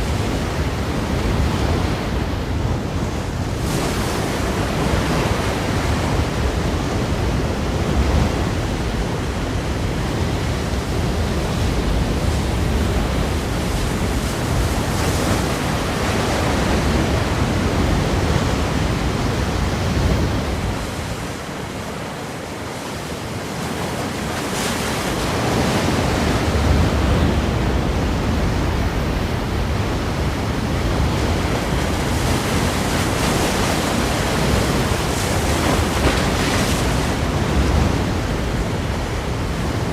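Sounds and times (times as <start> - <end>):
surf breaking against rocks: 31.2 - 38.4.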